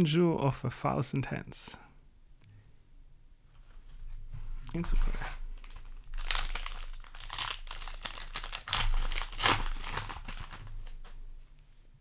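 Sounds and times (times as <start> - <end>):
foil wrapper crinkling: 4.7 - 11.2.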